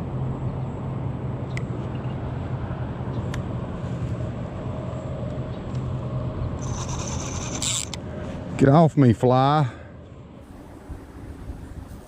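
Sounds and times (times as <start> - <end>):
motor vehicle running: 0.0 - 8.8.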